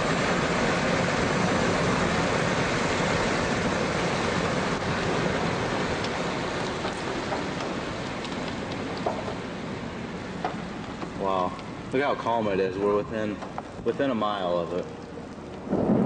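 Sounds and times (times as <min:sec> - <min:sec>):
steady rain falling: 0:00.0 - 0:16.0
raindrop taps: 0:05.8 - 0:09.5, 0:10.4 - 0:11.8, 0:12.8 - 0:16.0.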